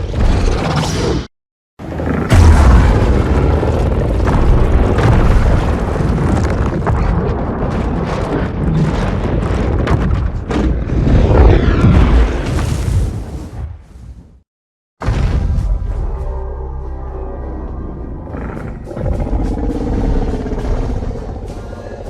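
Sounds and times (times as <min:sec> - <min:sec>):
heavy rumbling crackling blast: 0:02.0 - 0:13.7.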